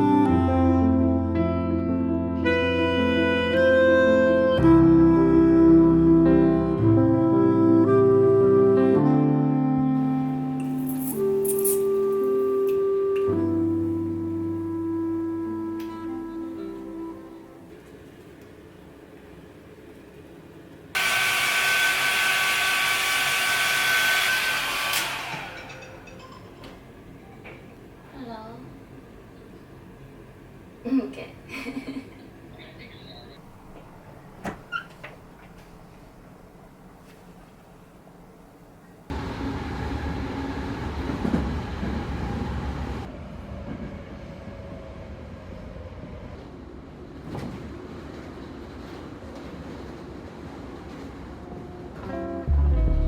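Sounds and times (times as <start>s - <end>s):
hair dryer running and winding down: 21.0s - 26.0s
faint hum: 52.5s - 53.0s
low mechanical rumble: 52.5s - 53.0s.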